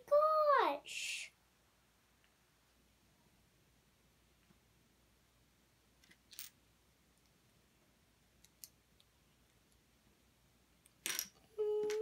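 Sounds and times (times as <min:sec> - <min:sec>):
faint plastic pieces clicking: 0:08.4 - 0:09.8.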